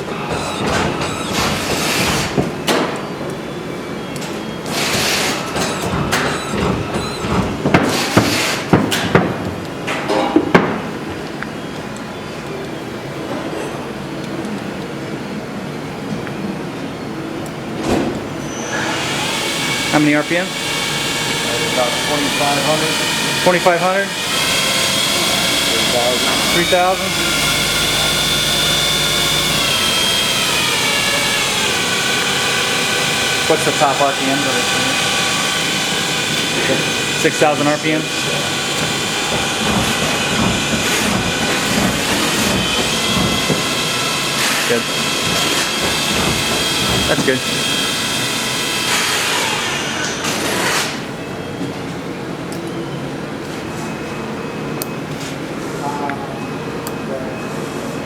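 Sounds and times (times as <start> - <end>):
mechanical knocks and clunks: 0.0 - 3.1, 4.7 - 11.0, 38.5 - 44.3, 45.0 - 47.4
machine hissing: 18.4 - 51.1.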